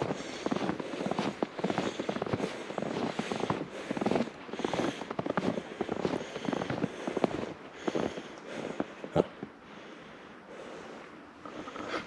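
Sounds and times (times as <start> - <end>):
footsteps crunching through snow: 0.0 - 9.1.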